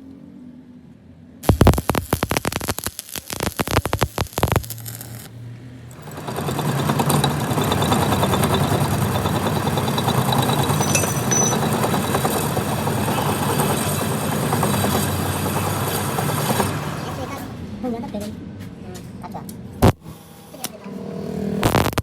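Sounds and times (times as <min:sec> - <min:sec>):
machine rattling rapidly: 0:05.9 - 0:17.2.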